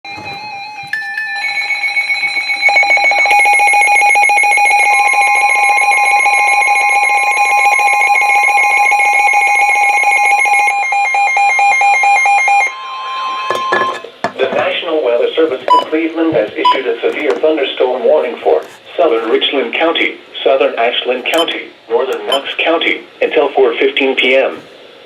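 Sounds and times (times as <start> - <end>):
pulsing multi-tone alert alarm: 0.1 - 14.0
steady warning tone: 0.1 - 14.2, 16.6 - 17.1.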